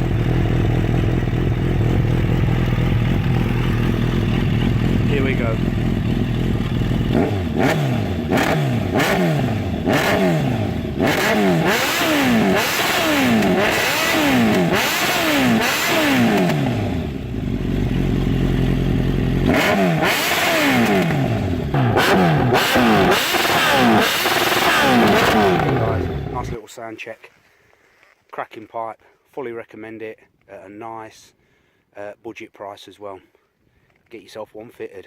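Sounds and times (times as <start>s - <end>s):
motorcycle engine revving: 0.0s - 26.6s.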